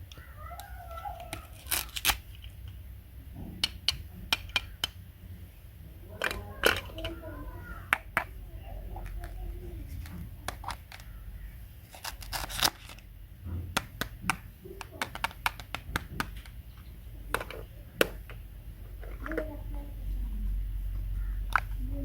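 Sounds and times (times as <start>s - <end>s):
crinkling: 0.0s - 2.8s, 6.1s - 22.0s
sharp clicks and taps: 3.4s - 5.0s, 13.4s - 18.4s.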